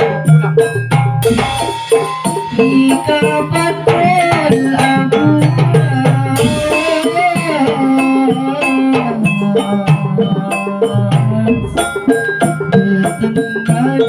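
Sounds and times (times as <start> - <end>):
percussion band playing: 0.0 - 14.0
plucked melody lines: 0.0 - 14.0.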